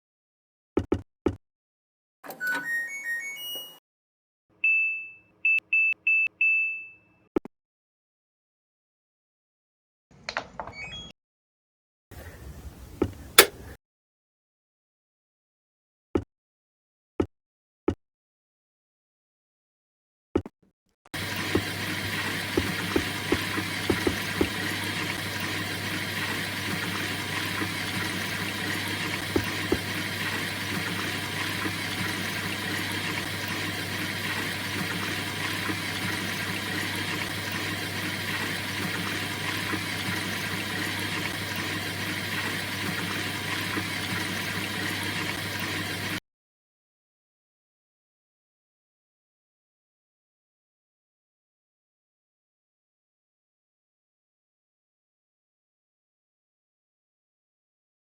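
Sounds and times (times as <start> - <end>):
washing machine filling with water: 13.4 - 13.6, 21.2 - 46.2
washing machine clicks: 13.4 - 13.7, 21.4 - 24.6, 29.2 - 30.0.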